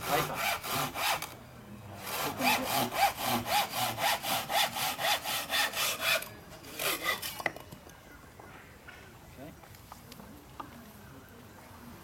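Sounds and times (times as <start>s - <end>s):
hand saw cutting timber: 0.0s - 1.4s, 2.0s - 7.4s.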